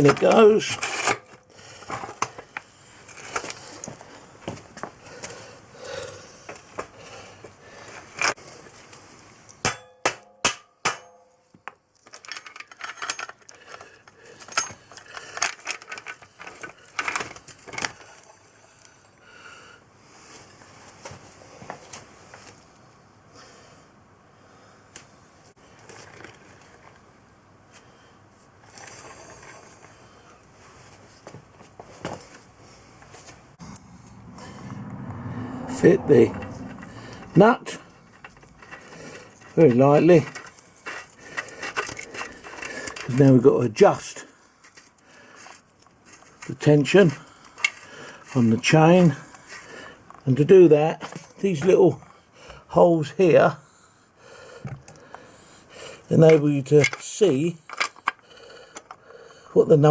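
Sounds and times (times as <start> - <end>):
metal tools clinking and knocking: 3.1 - 4.1, 12.0 - 13.8, 14.4 - 18.4, 36.4 - 43.2.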